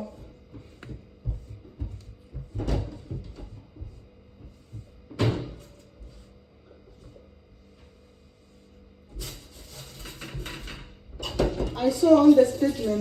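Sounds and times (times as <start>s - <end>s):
knocks of objects being handled: 0.2s - 5.6s.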